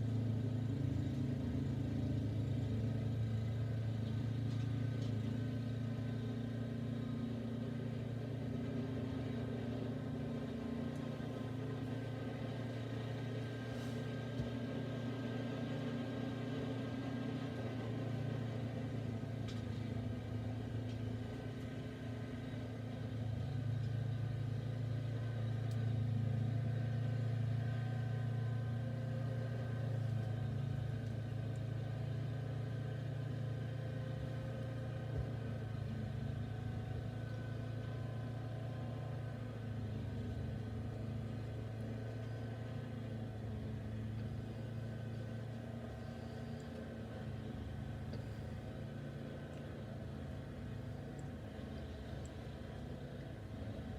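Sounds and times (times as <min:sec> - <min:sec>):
snowblower engine running: 0:00.0 - 0:53.9.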